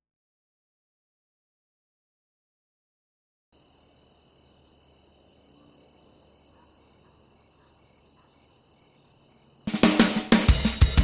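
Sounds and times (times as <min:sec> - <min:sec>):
crickets chirring: 0:03.6 - 0:09.8.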